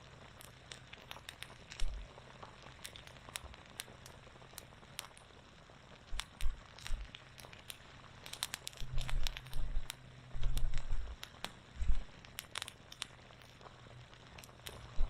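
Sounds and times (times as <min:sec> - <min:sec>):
campfire crackling and popping: 0:00.0 - 0:15.0
dull low thumps: 0:11.8 - 0:12.1.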